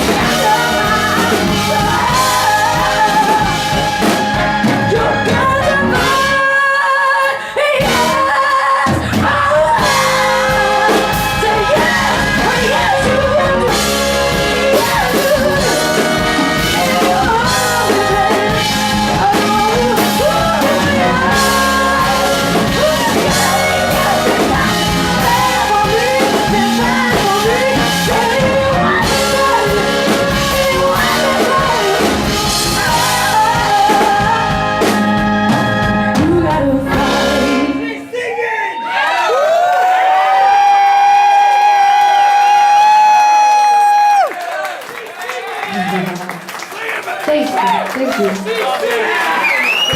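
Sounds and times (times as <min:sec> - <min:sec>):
live rock band playing: 0:00.0 - 0:06.8, 0:07.8 - 0:37.9
person singing: 0:00.0 - 0:38.1.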